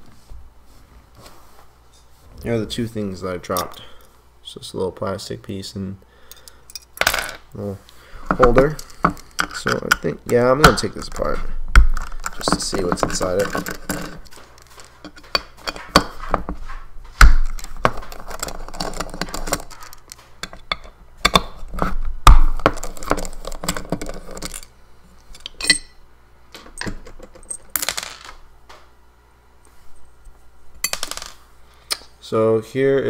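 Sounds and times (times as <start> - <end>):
hand tool clinking on metal: 25.5 - 26.0.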